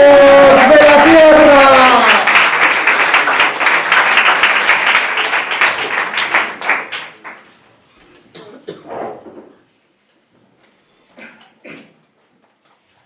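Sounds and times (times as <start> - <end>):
audience applauding: 0.0 - 7.5.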